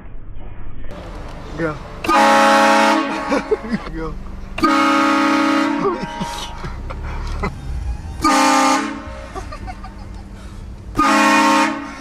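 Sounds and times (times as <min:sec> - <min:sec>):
low engine rumble: 0:00.8 - 0:12.0
train horn blasts: 0:02.0 - 0:03.5, 0:04.6 - 0:06.6, 0:08.2 - 0:09.3, 0:10.9 - 0:12.0.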